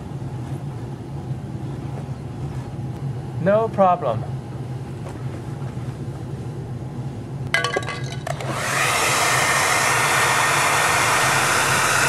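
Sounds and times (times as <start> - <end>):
hair dryer blowing: 8.2 - 12.0.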